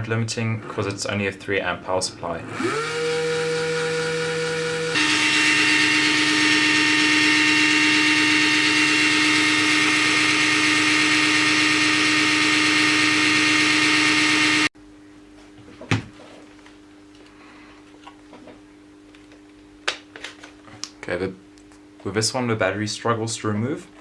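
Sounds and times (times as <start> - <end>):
drill motor whirring: 2.5 - 14.7.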